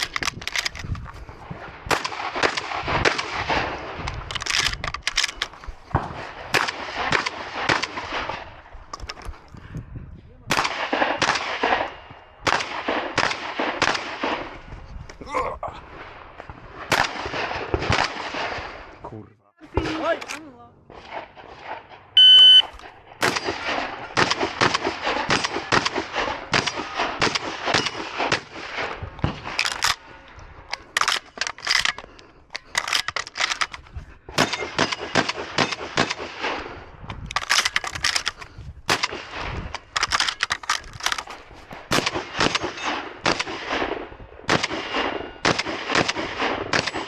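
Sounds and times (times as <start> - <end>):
rapid shotgun shots: 0.0 - 8.7, 10.5 - 14.6, 16.0 - 18.9, 20.9 - 47.0
shot timer beep: 22.2 - 22.7.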